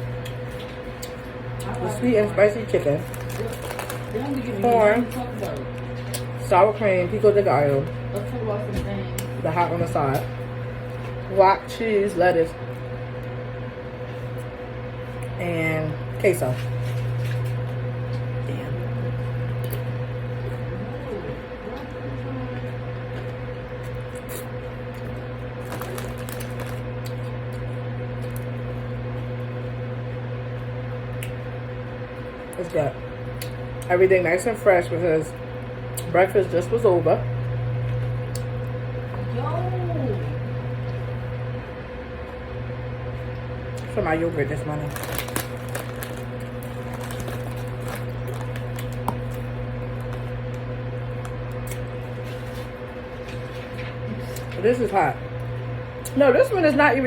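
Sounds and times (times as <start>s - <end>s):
low electrical hum: 0.0s - 57.0s
person eating and chewing: 3.0s - 4.5s, 23.1s - 28.5s, 44.9s - 52.7s.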